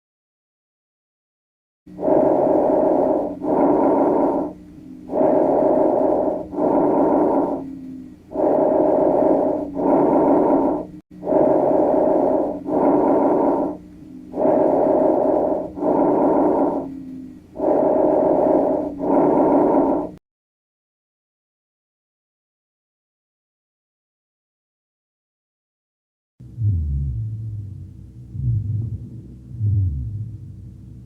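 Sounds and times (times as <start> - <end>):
faint low hum: 1.9 - 20.2, 26.4 - 31.0
lung breath sounds: 1.9 - 20.2.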